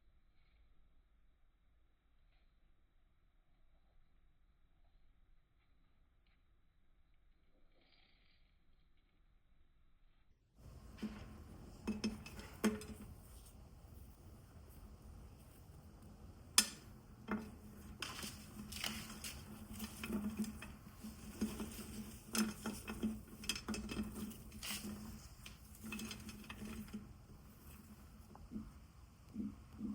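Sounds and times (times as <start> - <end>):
crinkles and clicks: 10.7 - 29.9
sharp snap of craft material: 16.6 - 16.9.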